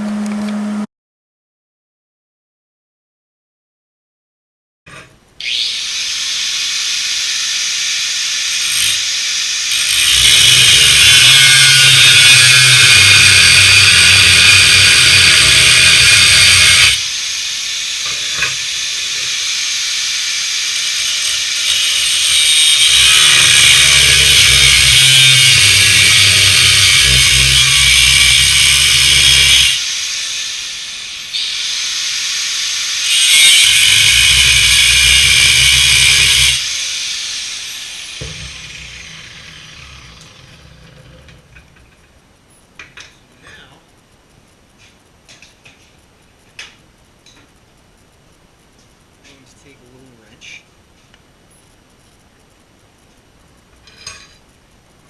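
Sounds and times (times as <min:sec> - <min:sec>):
angle grinder cutting steel: 0:00.0 - 0:00.9, 0:05.4 - 0:41.6
grinder disc winding down whine: 0:00.0 - 0:00.9, 0:22.9 - 0:29.8, 0:38.1 - 0:41.7.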